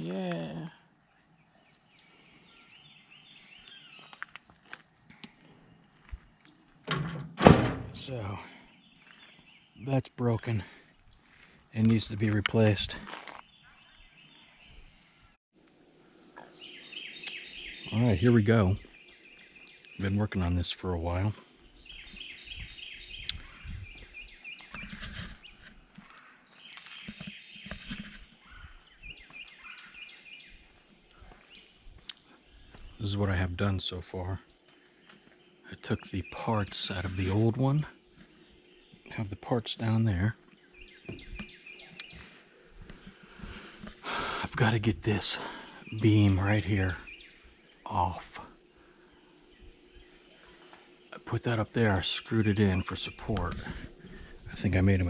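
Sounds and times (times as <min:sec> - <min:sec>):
faint bird chirping: 0:00.0 - 0:55.0
thumps and scrapes near microphone: 0:23.3 - 0:28.8, 0:41.0 - 0:44.0, 0:53.2 - 0:54.3.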